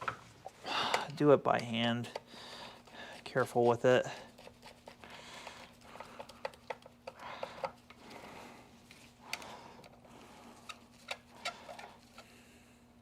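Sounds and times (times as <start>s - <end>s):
plastic parts clicking and tapping: 6.0s - 8.0s.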